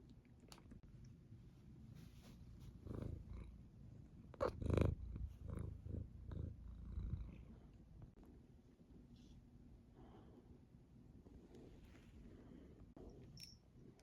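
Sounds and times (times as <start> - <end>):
cat purring: 2.2 - 8.2.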